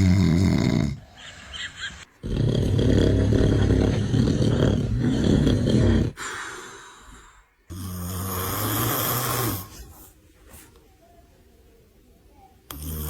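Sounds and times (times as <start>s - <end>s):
man snoring loudly: 0.0s - 1.0s, 2.2s - 6.2s, 7.7s - 9.8s, 12.7s - 13.0s.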